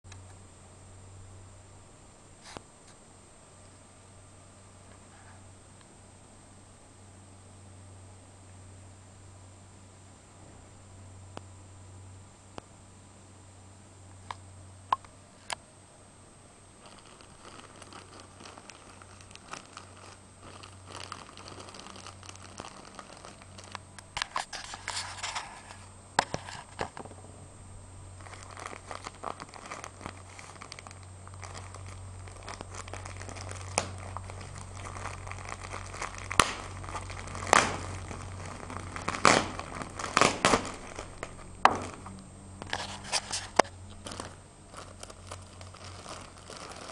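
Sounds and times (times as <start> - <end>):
packaging crinkling: 16.8 - 27.1, 28.2 - 46.9.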